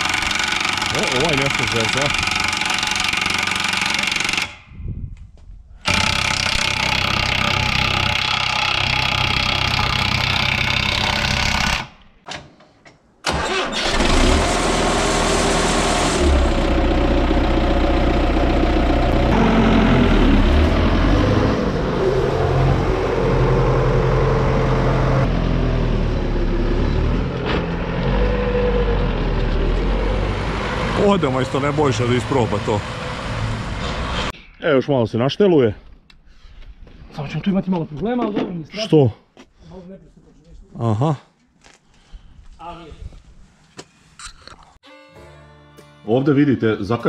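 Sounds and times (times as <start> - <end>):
tractor diesel engine running: 0.0 - 4.5, 5.8 - 11.9, 13.3 - 34.3.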